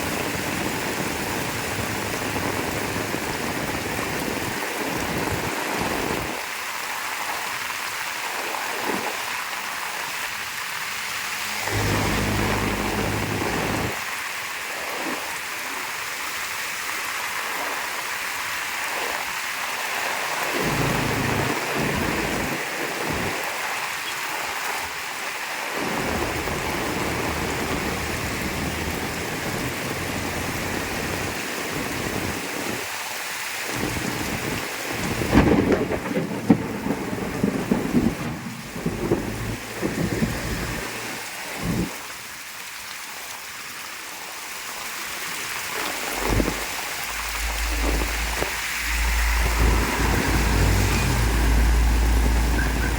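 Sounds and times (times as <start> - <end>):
heavy rain falling: 0.0 - 52.9
thunder rumbling and cracking: 11.5 - 14.1, 20.4 - 23.8, 25.8 - 32.5, 33.7 - 42.0, 45.8 - 52.9.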